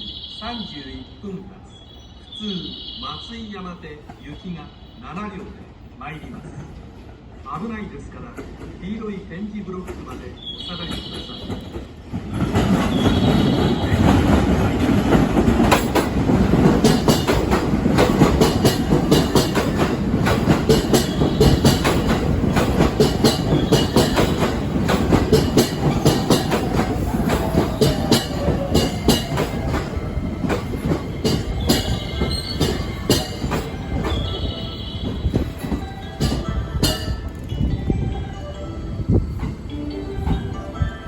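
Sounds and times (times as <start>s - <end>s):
train wheels clicking over rail joints: 10.9s - 37.8s.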